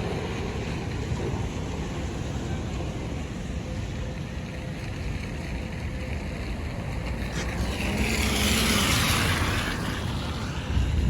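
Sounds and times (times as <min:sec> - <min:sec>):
storm wind on microphone: 0:07.0 - 0:11.0.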